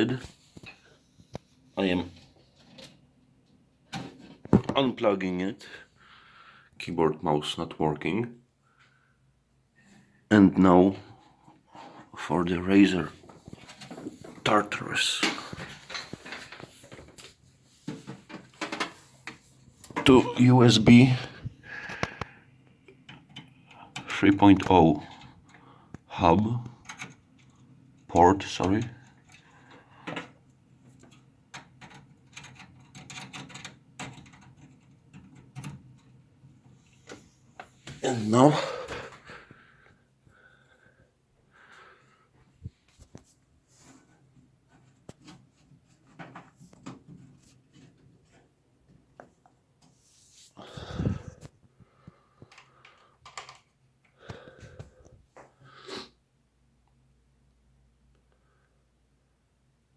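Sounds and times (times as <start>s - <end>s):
plastic hardware clicks and knocks: 17.9s - 20.1s.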